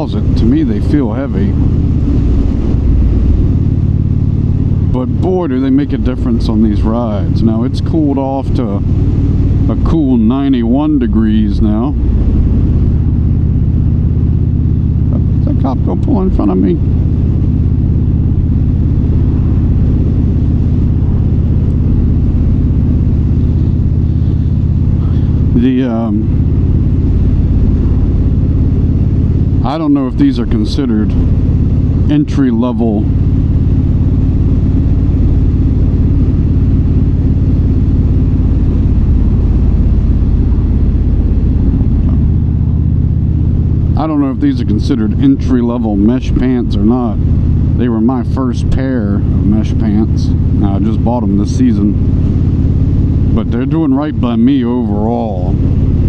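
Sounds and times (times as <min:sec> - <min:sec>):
wind rush: 0:00.0 - 0:07.4, 0:08.8 - 0:32.1, 0:33.1 - 0:44.0
motorcycle engine cruising: 0:00.0 - 0:56.0.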